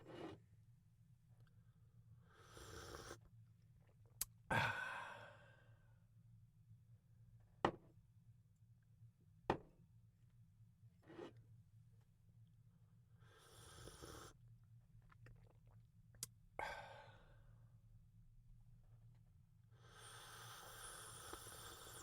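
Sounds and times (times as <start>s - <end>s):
person slurping coffee: 20.3s - 22.0s.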